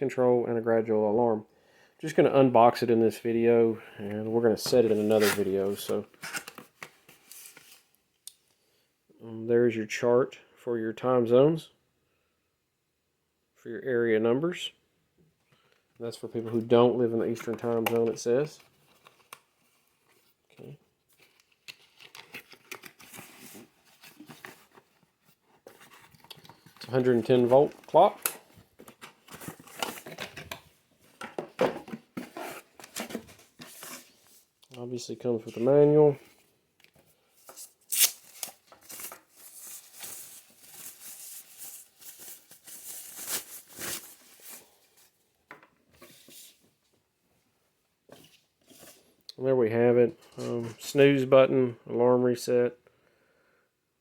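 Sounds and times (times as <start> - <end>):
paper and cardboard crinkling: 4.6 - 7.8, 16.4 - 34.6, 35.4 - 45.2.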